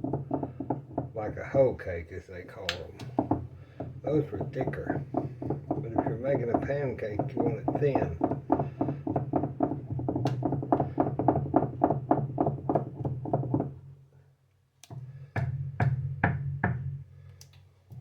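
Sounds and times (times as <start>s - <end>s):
spoon beating batter in bowl: 0.0s - 13.7s.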